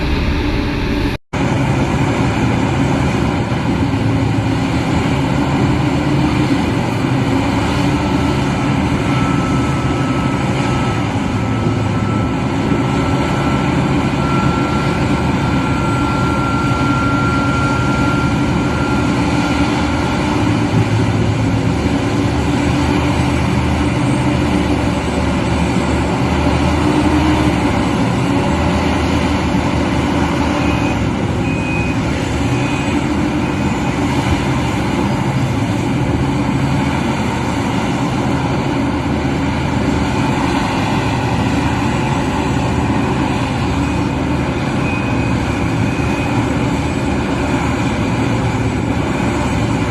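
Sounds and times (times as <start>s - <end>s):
faint high whine: 0.0s - 1.2s
excavator diesel engine under load: 0.0s - 49.9s
short warning beeps: 30.6s - 33.7s.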